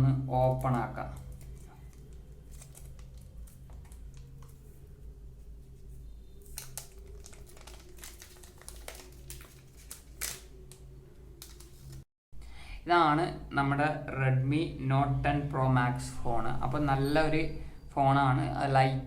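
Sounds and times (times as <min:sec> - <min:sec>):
plastic wrapping crinkling: 0:00.4 - 0:04.8, 0:06.3 - 0:12.1.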